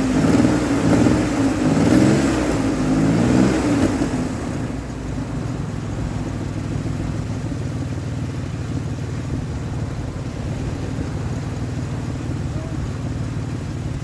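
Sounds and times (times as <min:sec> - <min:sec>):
car engine idling: 0:00.0 - 0:14.0.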